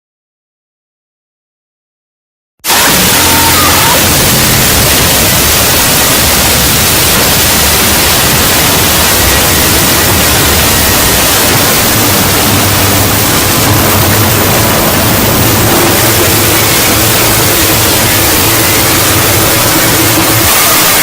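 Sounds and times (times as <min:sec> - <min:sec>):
static hiss: 0:02.7 - 0:21.0.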